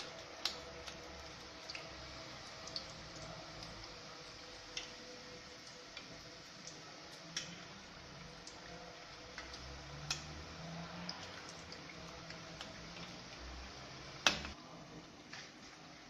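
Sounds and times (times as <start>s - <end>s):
oil pops and crackles: 0.0s - 1.9s, 14.2s - 14.6s
pastries deep-frying in oil: 0.0s - 16.0s.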